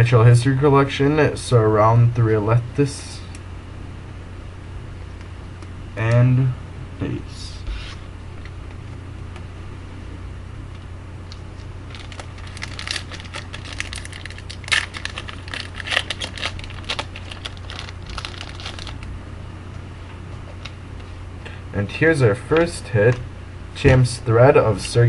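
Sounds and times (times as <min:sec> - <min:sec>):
steady low hum: 0:00.0 - 0:25.0
foil wrapper tearing and crinkling: 0:11.3 - 0:19.1.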